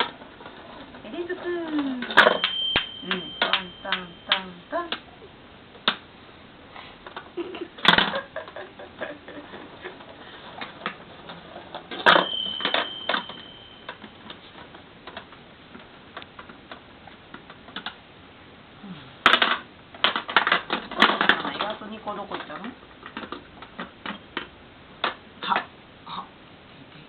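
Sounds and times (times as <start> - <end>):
short high bell ring: 2.3 - 4.3, 12.1 - 13.9
plastic balls clicking and rattling: 19.2 - 25.7.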